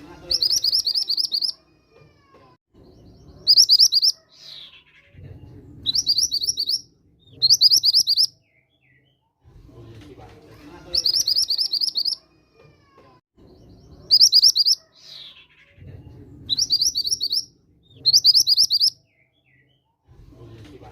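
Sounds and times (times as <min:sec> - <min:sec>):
bird chattering calls: 0:03.4 - 0:05.1, 0:05.9 - 0:06.8, 0:07.4 - 0:08.3, 0:10.9 - 0:12.2, 0:14.0 - 0:15.8, 0:16.5 - 0:18.9.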